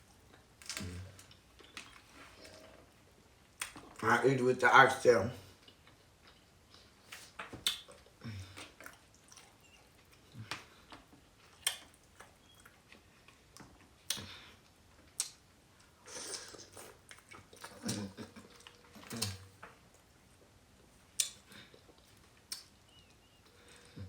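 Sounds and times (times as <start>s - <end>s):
person chewing and smacking: 0.2s - 2.7s, 3.5s - 4.0s, 5.6s - 24.0s.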